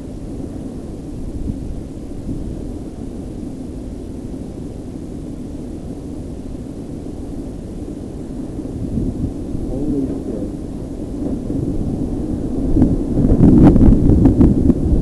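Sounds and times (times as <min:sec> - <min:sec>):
wind buffeting microphone: 0:00.0 - 0:03.0, 0:07.7 - 0:15.0.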